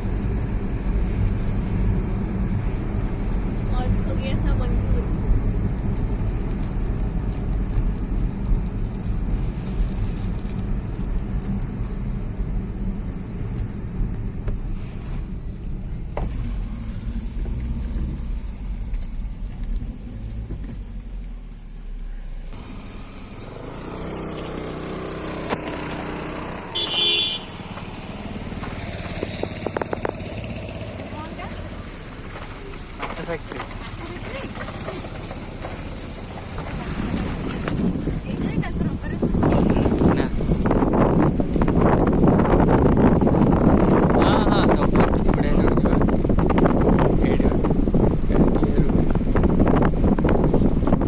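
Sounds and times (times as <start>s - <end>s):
road and wind noise: 0.0s - 51.0s
road vehicle rumble: 0.0s - 51.0s
short horn beep: 26.7s - 27.6s.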